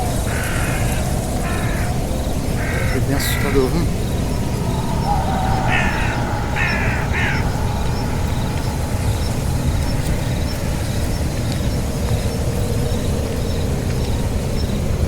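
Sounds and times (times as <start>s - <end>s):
bird calls: 0.0s - 13.7s
steady low rumble: 1.8s - 12.8s.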